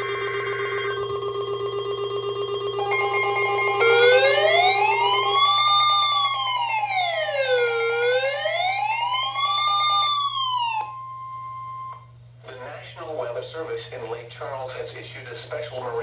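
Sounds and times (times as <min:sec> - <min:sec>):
steady alarm tones: 0:00.0 - 0:12.1
wailing siren tone: 0:00.0 - 0:12.1.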